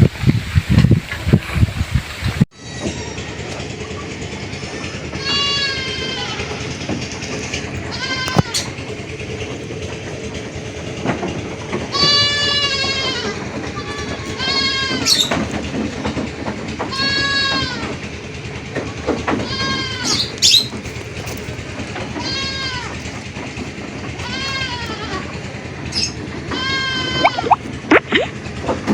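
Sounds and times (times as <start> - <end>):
goats bleating: 2.6 - 3.6, 4.6 - 8.9, 11.5 - 16.0, 16.8 - 18.2, 18.8 - 27.6
short high squeaks: 12.0 - 15.5, 19.4 - 21.5, 25.9 - 28.3.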